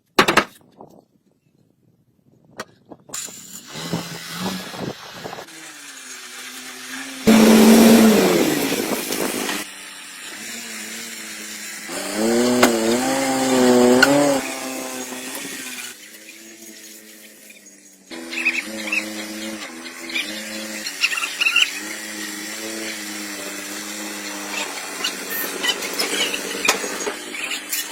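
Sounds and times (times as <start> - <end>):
car engine revving: 7.2 - 9.6, 11.9 - 15.7
loud noisy burst: 7.2 - 9.6.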